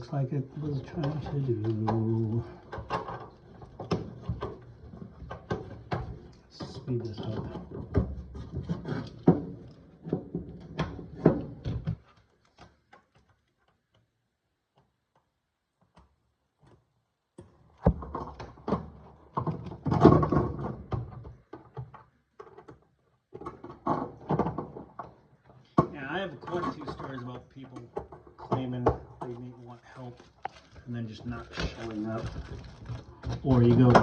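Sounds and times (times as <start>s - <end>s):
knocks and thuds of handwork: 17.4s - 22.0s.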